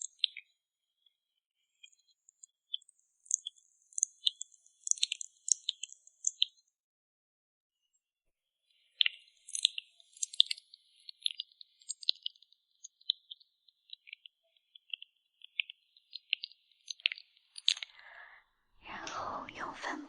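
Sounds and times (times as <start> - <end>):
crisp clicking and tapping: 14.9 - 18.0.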